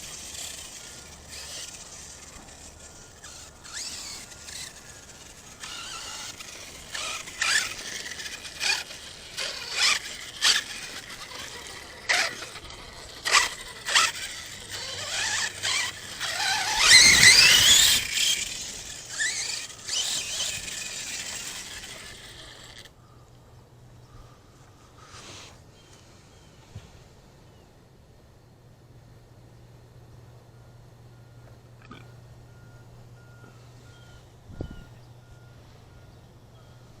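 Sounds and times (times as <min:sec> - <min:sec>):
electric motor whining: 0:00.0 - 0:22.9
short sharp squeals and clicks: 0:00.0 - 0:22.9.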